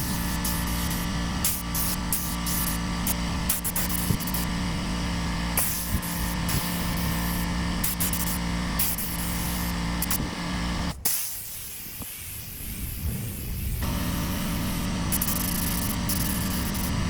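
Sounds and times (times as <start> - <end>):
air spray gun hissing: 0.0 - 17.0
steady low hum: 0.0 - 17.0.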